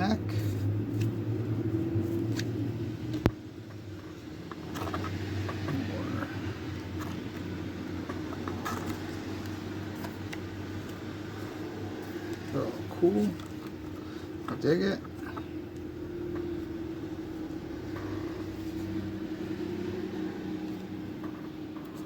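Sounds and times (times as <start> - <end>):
steady low hum: 0.0 - 22.0
paper rustling and handling: 7.0 - 14.6.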